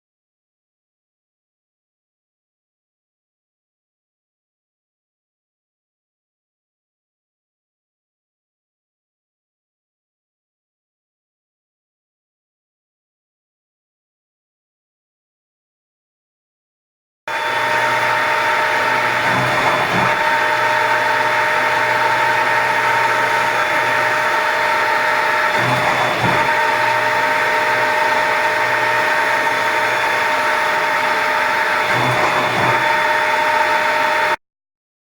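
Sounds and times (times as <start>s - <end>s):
lathe mechanical hum: 17.3s - 34.4s
whining machine tones: 17.3s - 34.4s
heavy machine clatter: 17.6s - 29.9s, 30.8s - 33.4s.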